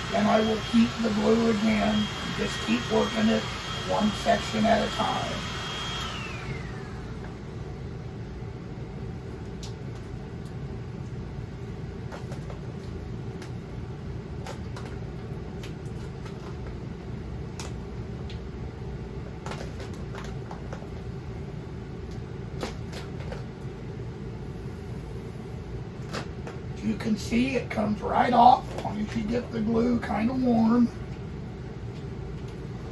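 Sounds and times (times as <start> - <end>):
heat gun blower running: 0.0 - 7.8.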